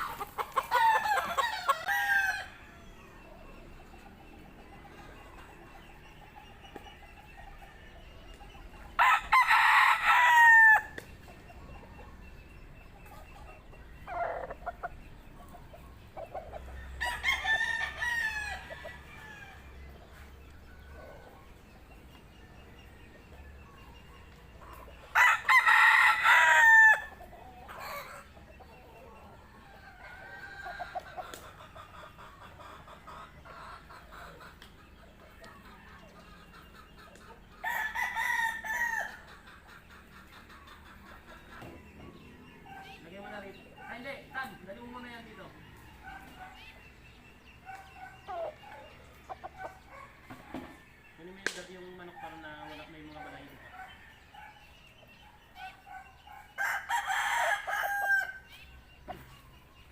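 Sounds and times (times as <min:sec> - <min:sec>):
rooster crowing: 0:09.0 - 0:11.0, 0:16.9 - 0:19.8, 0:25.1 - 0:27.2, 0:37.6 - 0:39.2, 0:56.6 - 0:58.5.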